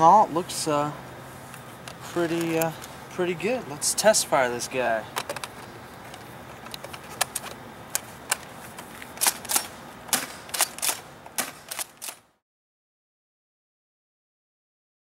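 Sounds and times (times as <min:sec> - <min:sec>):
airsoft shotgun firing clacks: 0:09.2 - 0:12.2.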